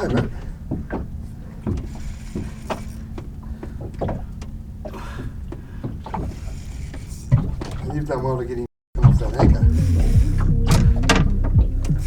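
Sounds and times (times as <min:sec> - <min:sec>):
boat engine low rumble: 0:00.0 - 0:12.0.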